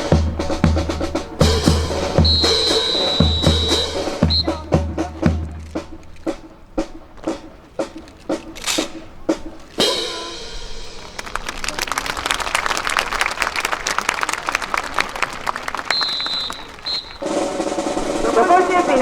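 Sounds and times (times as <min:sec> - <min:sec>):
sharp clacks: 0:04.2 - 0:10.2, 0:10.9 - 0:18.0
audience applause: 0:10.8 - 0:17.8.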